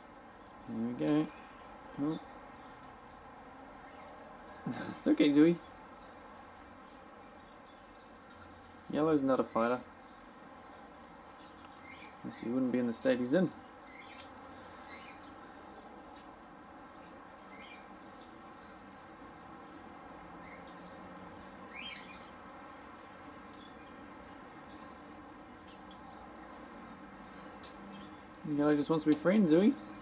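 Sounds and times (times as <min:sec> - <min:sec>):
small parrots chirping: 0:13.9 - 0:18.8, 0:23.4 - 0:28.4.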